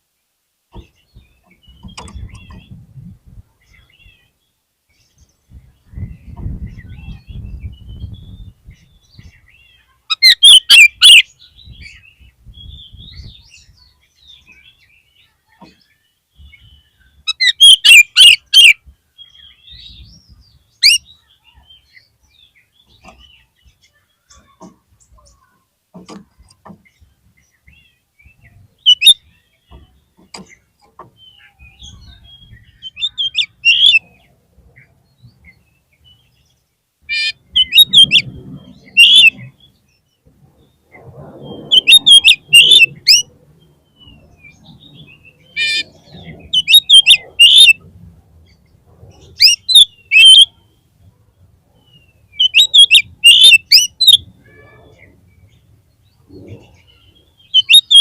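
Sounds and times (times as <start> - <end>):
bird whistling song: 5.8 - 15.0, 16.4 - 24.5, 27.6 - 30.5, 31.2 - 34.2, 37.1 - 39.9, 40.6 - 47.8, 49.2 - 50.7, 51.8 - 55.5, 56.6 - 58.0.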